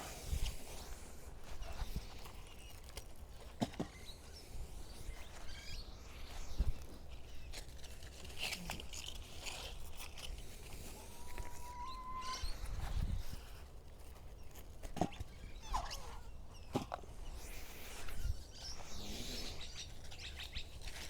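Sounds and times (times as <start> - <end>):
leaves rustling: 4.2 - 21.0
bird calling: 10.8 - 13.5.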